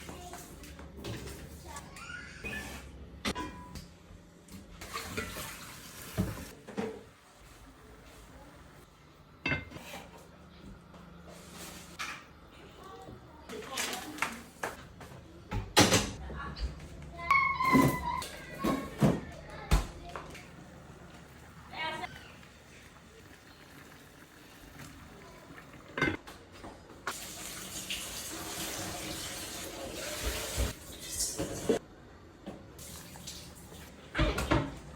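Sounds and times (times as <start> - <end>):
tap water running: 4.8 - 6.6, 20.3 - 26.2, 27.1 - 31.8, 32.8 - 34.0
tap water running into sink: 27.1 - 31.8.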